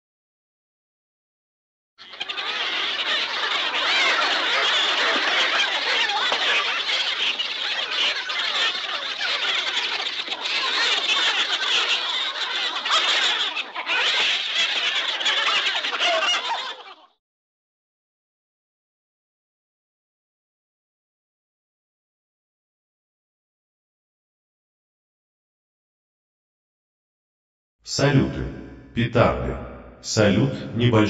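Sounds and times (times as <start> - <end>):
high-pitched gibberish voice chatter: 2.0 - 17.2.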